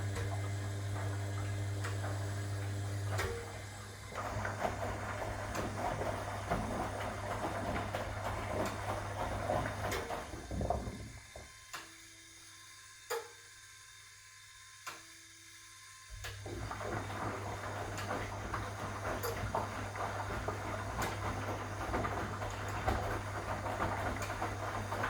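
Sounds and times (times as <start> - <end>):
washing machine motor humming: 0.0 - 11.8, 16.1 - 25.0.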